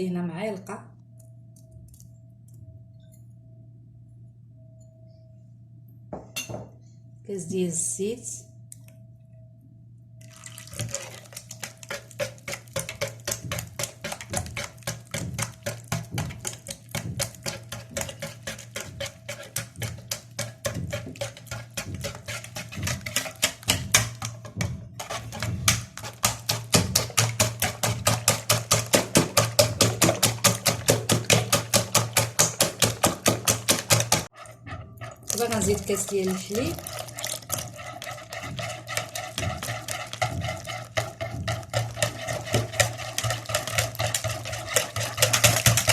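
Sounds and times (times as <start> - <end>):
whisk clicking against bowl: 11.4 - 45.9.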